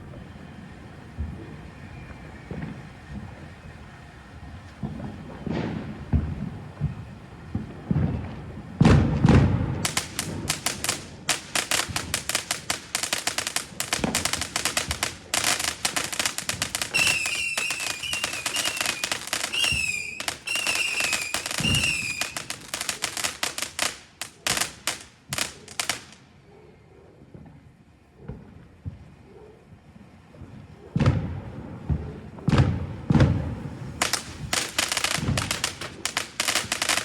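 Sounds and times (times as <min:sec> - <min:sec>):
warbling firework whistles: 0:00.0 - 0:04.2, 0:09.8 - 0:26.2, 0:33.6 - 0:37.0
firework crackling: 0:00.0 - 0:26.2, 0:31.0 - 0:37.0
firework launch thumps: 0:08.8 - 0:25.8.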